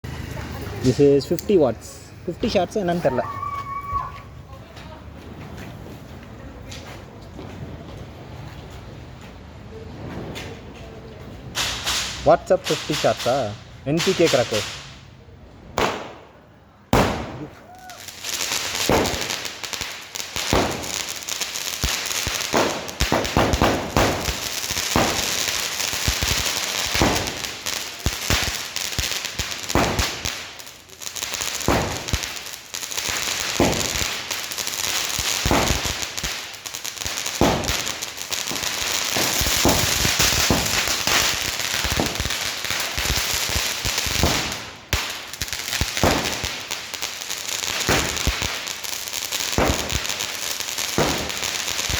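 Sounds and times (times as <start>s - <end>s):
firework sizzling crackle: 11.4s - 15.0s, 17.0s - 51.9s
firework launch pops: 11.6s - 13.4s, 15.8s - 16.3s, 16.9s - 17.8s, 18.8s - 19.4s, 20.4s - 21.0s, 21.9s - 25.3s, 26.1s - 27.6s, 29.7s - 30.4s, 31.6s - 32.3s, 33.6s - 34.1s, 35.4s - 36.4s, 37.4s - 46.6s, 47.7s - 48.5s, 49.6s - 50.0s, 51.0s - 51.9s.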